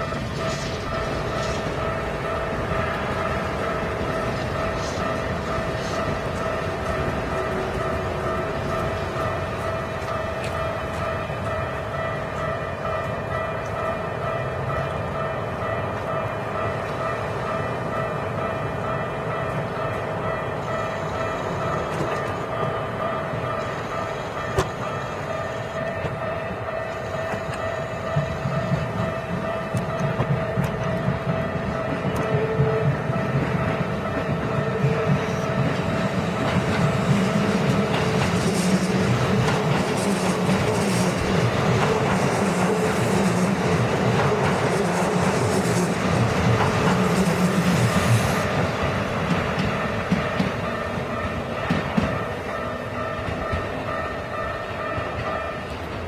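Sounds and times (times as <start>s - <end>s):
clickety-clack over rail joints: 0.0s - 56.0s
electric train rumbling past: 0.0s - 56.0s.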